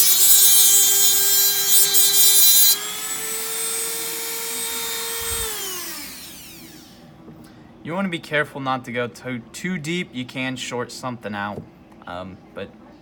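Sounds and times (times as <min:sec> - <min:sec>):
rotary tool grinding metal: 0:00.0 - 0:07.0
rotary tool motor running free: 0:00.0 - 0:07.0.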